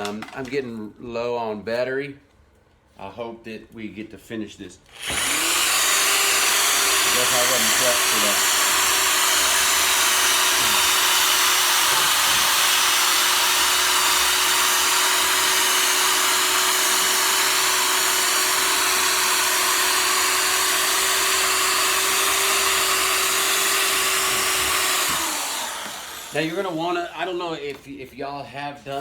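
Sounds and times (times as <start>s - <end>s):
cordless drill motor whine: 4.9s - 27.4s.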